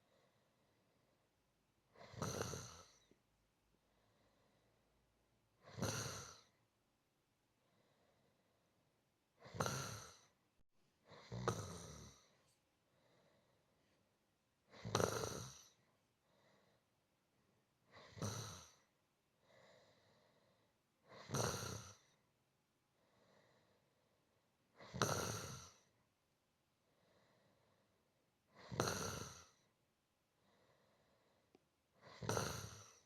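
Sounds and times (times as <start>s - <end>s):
person snoring softly: 1.9s - 3.2s, 5.6s - 6.6s, 9.4s - 10.4s, 11.0s - 14.0s, 14.6s - 16.8s, 17.8s - 22.2s, 23.0s - 26.0s, 26.9s - 29.8s, 30.4s - 33.0s.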